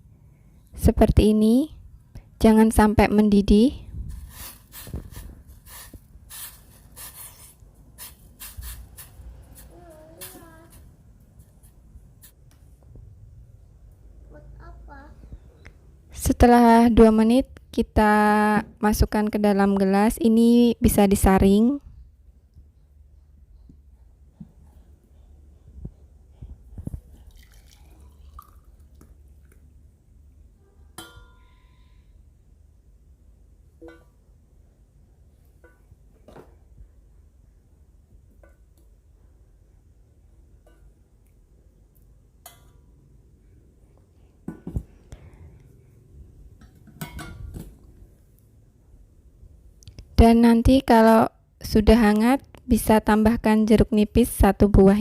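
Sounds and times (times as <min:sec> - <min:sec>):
soft crackles and hiss: 0:26.4 - 0:29.7.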